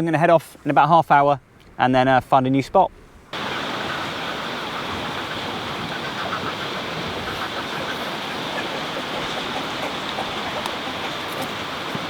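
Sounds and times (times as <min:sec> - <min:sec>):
sea surf rushing: 0:03.3 - 0:12.0.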